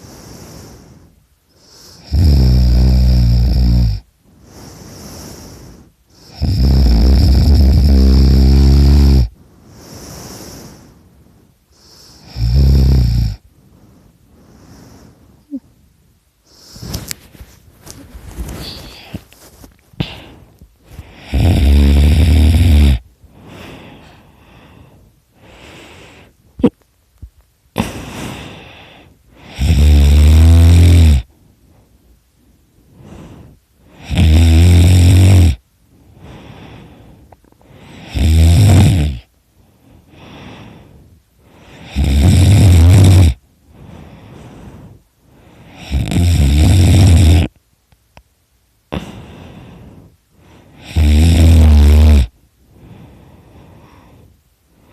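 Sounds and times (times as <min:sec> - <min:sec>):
man snoring loudly: 0:02.0 - 0:04.1, 0:06.2 - 0:09.3, 0:12.2 - 0:13.4, 0:21.0 - 0:23.0, 0:29.4 - 0:31.3, 0:34.0 - 0:35.6, 0:38.0 - 0:39.3, 0:41.8 - 0:43.4, 0:45.7 - 0:47.6, 0:50.8 - 0:52.4.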